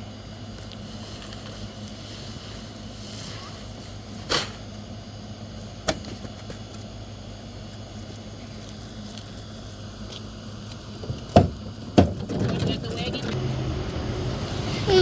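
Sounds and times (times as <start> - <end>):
vehicle engine humming: 3.7 - 15.0.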